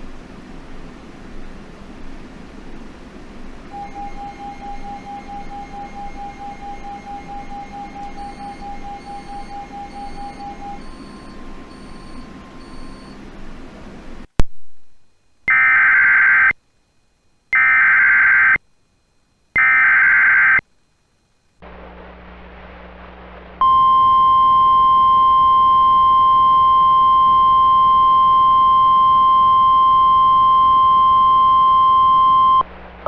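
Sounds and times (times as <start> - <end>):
single-pitch warning alarm tone: 3.7 - 13.3, 23.6 - 32.6
warbling data tones: 3.7 - 13.3.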